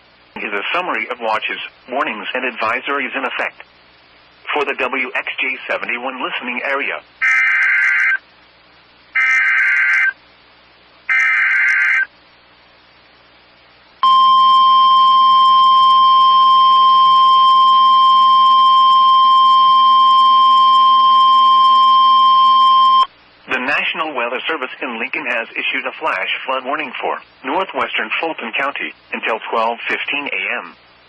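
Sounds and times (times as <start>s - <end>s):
data tone bursts: 14.0s - 23.1s
steady high alarm beep: 14.0s - 23.1s.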